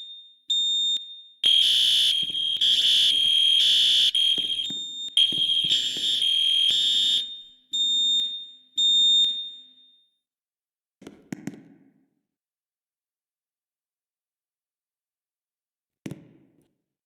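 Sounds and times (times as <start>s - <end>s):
fire alarm tone: 1.4s - 7.4s.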